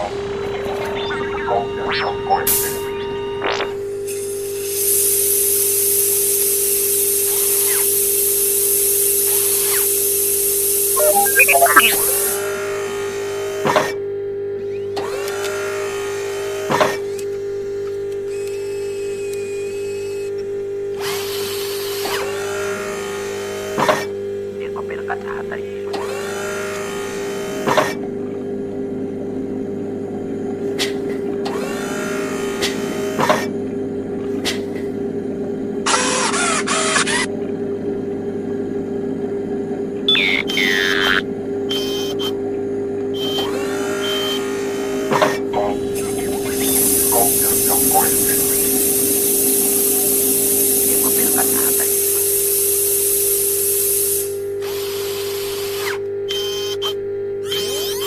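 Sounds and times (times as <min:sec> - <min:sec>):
falling electronic tones: 0:00.0 - 0:03.8, 0:11.0 - 0:12.4, 0:40.0 - 0:42.1, 0:45.4 - 0:51.9
electrical hum: 0:00.0 - 0:04.6, 0:05.2 - 0:12.5, 0:24.1 - 0:54.9
faint short chirps: 0:11.0 - 0:12.3
hiss of venting air: 0:45.7 - 0:54.3.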